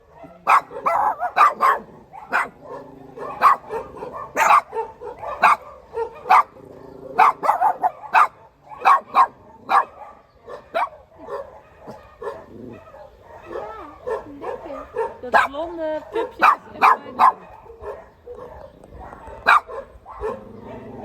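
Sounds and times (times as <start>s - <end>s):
dog barking: 0.0s - 6.6s, 7.2s - 21.0s.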